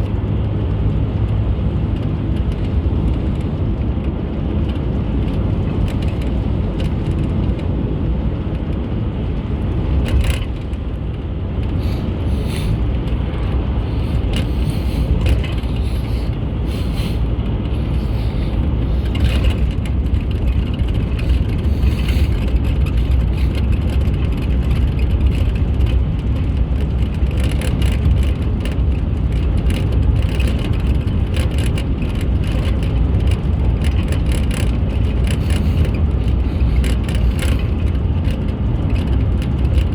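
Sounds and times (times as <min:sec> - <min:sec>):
car driving rumble: 0:00.0 - 0:39.9
small rattles and ticks: 0:09.7 - 0:39.9.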